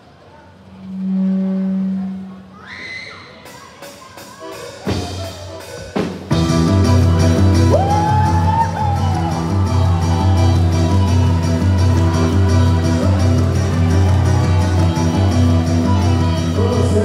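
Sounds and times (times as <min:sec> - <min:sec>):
festive folk band music: 0:03.8 - 0:17.0.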